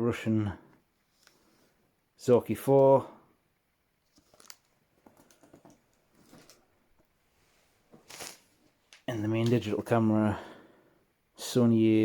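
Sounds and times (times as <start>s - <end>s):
small items clicking and rustling: 4.1s - 6.7s.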